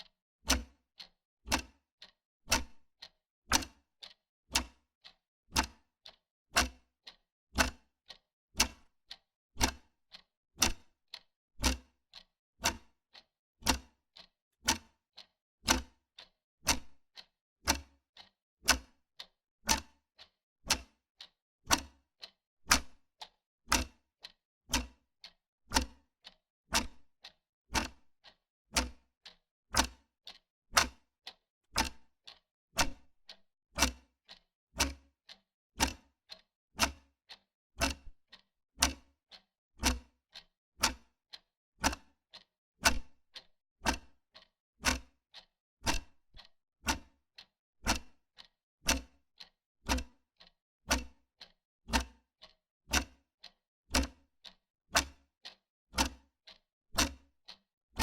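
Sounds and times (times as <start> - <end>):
wall clock ticking: 1.5 - 4.8, 5.6 - 6.7, 7.6 - 12.8, 13.6 - 18.9, 19.7 - 20.0, 20.7 - 21.0, 21.7 - 24.0, 25.7 - 27.0, 27.7 - 47.2, 52.4 - 57.6.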